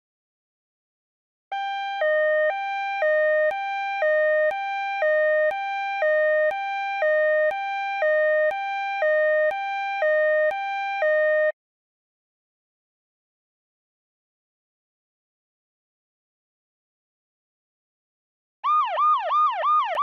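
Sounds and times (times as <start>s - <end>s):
two-tone electronic siren: 1.5s - 11.6s, 18.6s - 20.0s.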